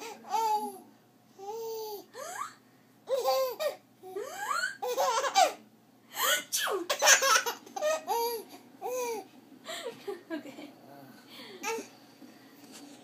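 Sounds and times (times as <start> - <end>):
baby laughing: 1.4 - 5.6, 6.3 - 9.2.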